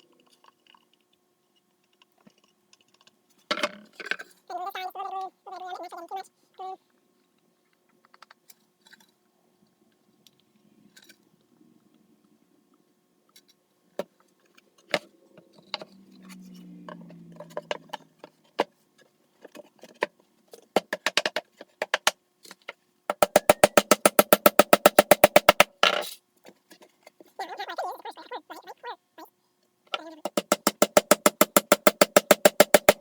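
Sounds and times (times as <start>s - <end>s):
hammer driving nails: 23.1s - 25.7s, 30.3s - 33.0s
hand tools tapping wood: 23.1s - 25.9s, 30.2s - 33.0s.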